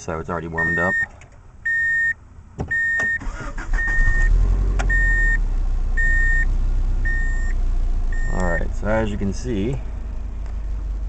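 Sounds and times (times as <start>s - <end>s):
car engine starting and idling: 0.0s - 11.0s
car warning chime beeping: 0.5s - 4.3s, 4.9s - 5.4s, 6.0s - 8.6s.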